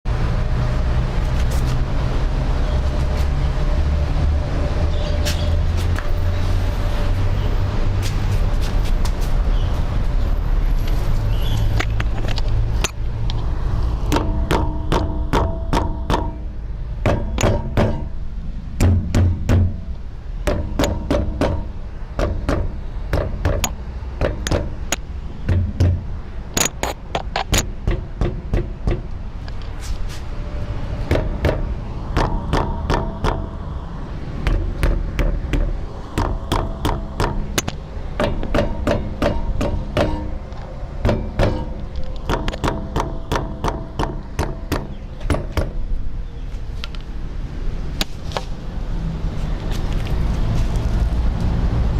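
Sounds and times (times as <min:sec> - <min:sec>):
mallet tapping on metal: 0:14.1 - 0:16.4, 0:34.4 - 0:40.4.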